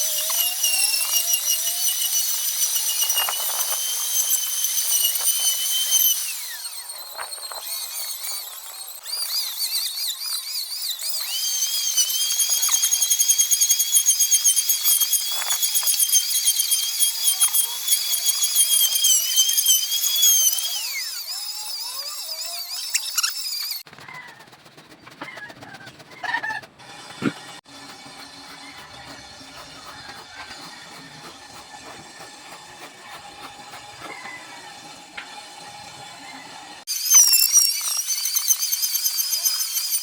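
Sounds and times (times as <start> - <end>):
power tool motor whine: 0.0 - 23.8, 34.1 - 40.0.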